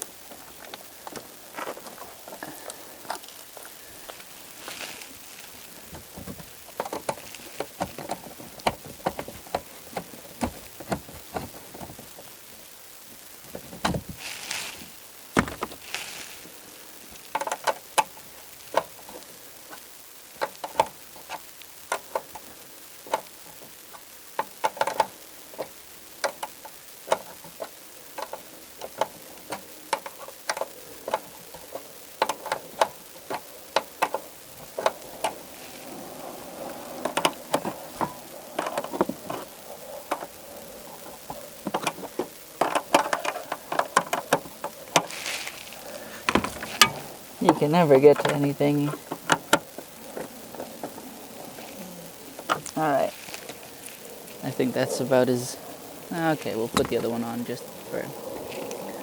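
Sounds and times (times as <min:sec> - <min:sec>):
heavy thumps: 0:04.0 - 0:12.3, 0:13.5 - 0:16.5, 0:45.0 - 0:49.3.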